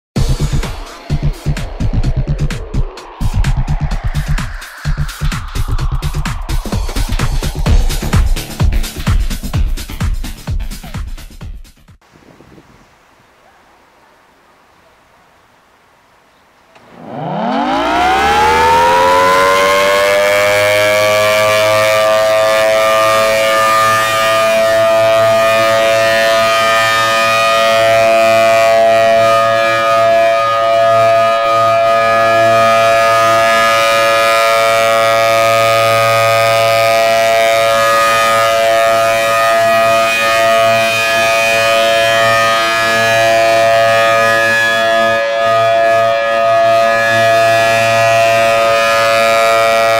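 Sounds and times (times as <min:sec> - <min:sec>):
warning siren winding up: 0:16.8 - 0:49.9.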